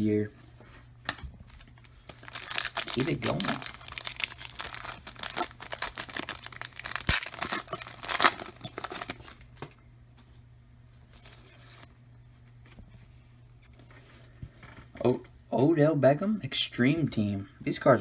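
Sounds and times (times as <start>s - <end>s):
plastic wrapper tearing and crinkling: 1.5s - 9.5s, 11.0s - 11.9s.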